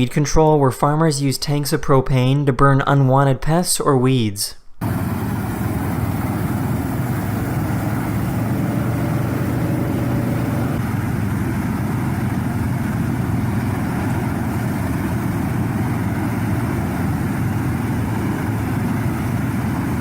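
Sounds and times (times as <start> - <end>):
engine hum: 4.8 - 20.0
flame weeder rushing noise: 4.8 - 20.0.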